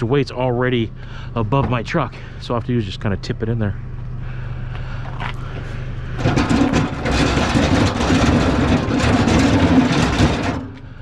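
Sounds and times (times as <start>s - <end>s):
steady low hum: 0.0s - 11.0s
heavy metal scrap scraping and rattling: 6.1s - 10.8s.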